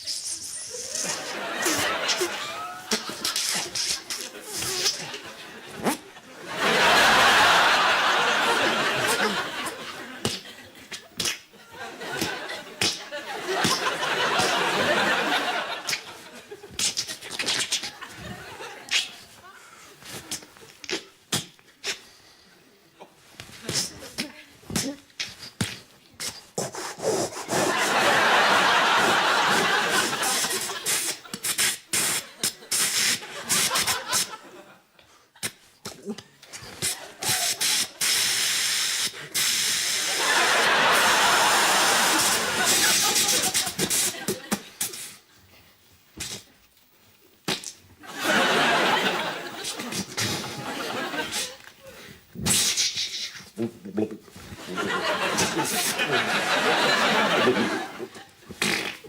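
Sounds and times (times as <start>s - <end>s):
studio audience laughing: 0.9s - 16.7s, 17.8s - 19.3s, 27.6s - 31.4s, 32.2s - 34.8s, 39.8s - 44.7s, 48.0s - 51.6s, 54.6s - 58.4s.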